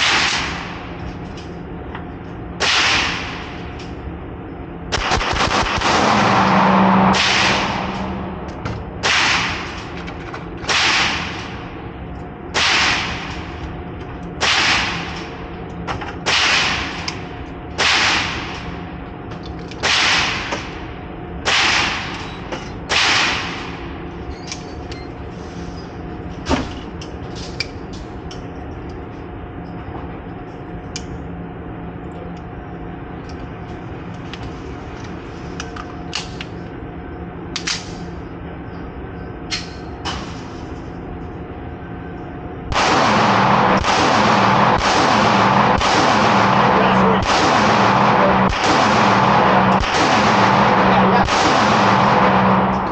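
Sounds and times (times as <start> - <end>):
pistol shots indoors: 0.0 - 0.9, 2.6 - 4.0, 4.9 - 11.7, 12.5 - 13.6, 14.3 - 15.3, 16.2 - 18.9, 19.8 - 24.1, 42.7 - 52.9
background hum: 0.0 - 52.9.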